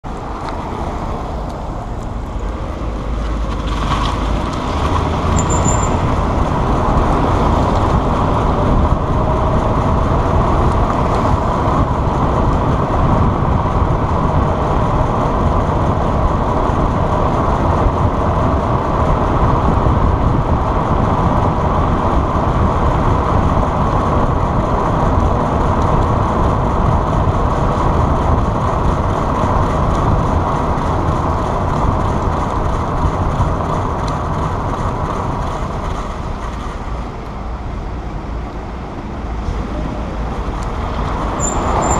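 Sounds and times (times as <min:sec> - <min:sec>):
vehicle road noise: 0:00.0 - 0:41.9
faint wheel squeak: 0:05.3 - 0:06.1, 0:41.4 - 0:41.9.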